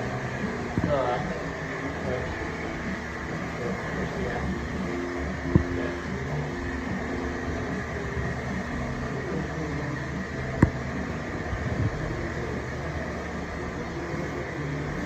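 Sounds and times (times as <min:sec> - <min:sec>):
fan humming and hissing: 0:00.0 - 0:15.0.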